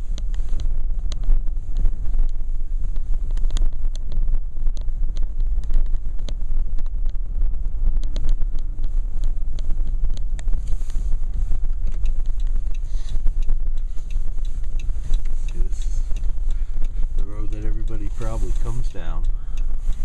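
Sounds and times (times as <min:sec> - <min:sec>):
car interior road rumble: 0:00.0 - 0:20.0
small clicks and knocks: 0:11.7 - 0:17.3.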